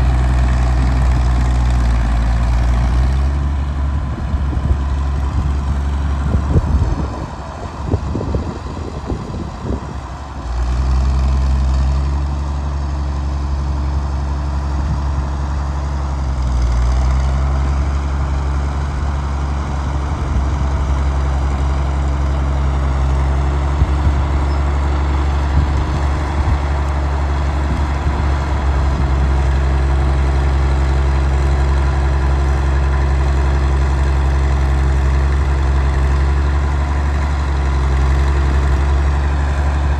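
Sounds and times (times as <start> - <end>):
bulldozer diesel engine running: 0.0 - 39.9.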